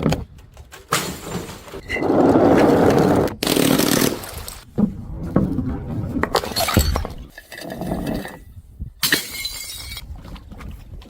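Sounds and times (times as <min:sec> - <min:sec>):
glass crunching and clinking: 0:03.4 - 0:04.6.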